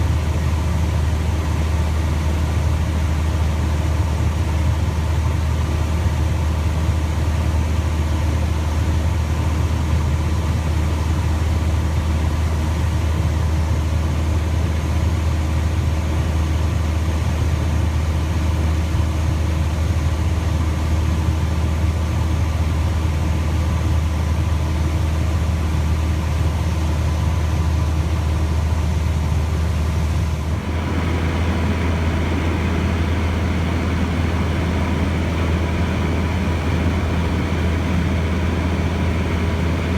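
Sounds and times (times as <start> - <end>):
propeller plane engine droning: 30.4 - 39.9.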